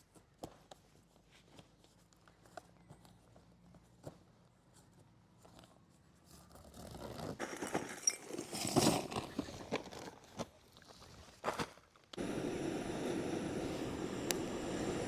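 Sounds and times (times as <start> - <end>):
objects scraping rustling and clinking: 6.6 - 10.4.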